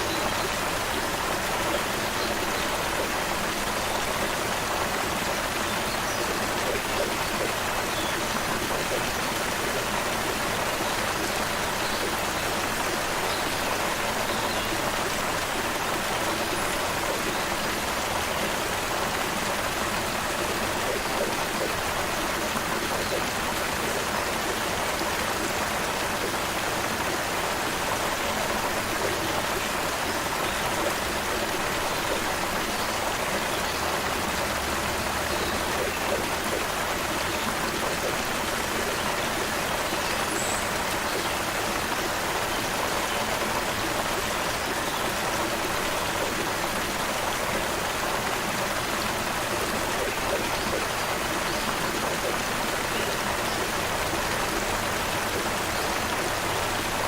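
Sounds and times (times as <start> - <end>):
creek water babbling: 0.0 - 57.0.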